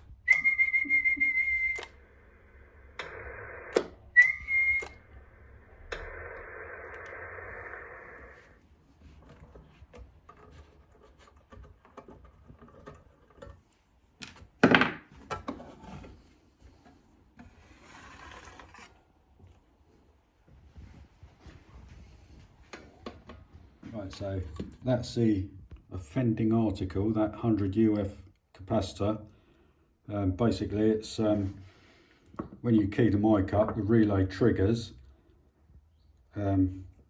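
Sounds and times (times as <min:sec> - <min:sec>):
steady whistle tone: 0:00.2 - 0:08.6
bursts of radio hiss: 0:01.0 - 0:08.6.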